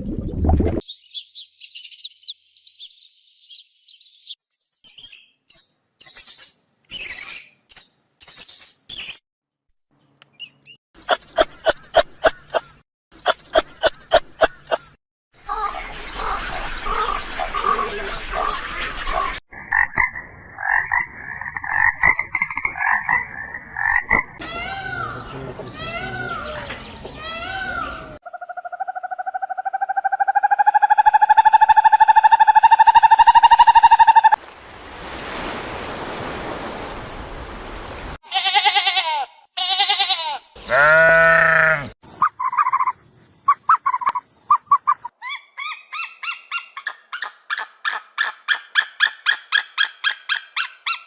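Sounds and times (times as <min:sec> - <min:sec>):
frogs croaking: 0:16.8 - 0:24.4, 0:28.2 - 0:32.2, 0:40.6 - 0:45.1
quavering bleats: 0:38.2 - 0:42.0
buzzy animal call: 0:39.6 - 0:42.9.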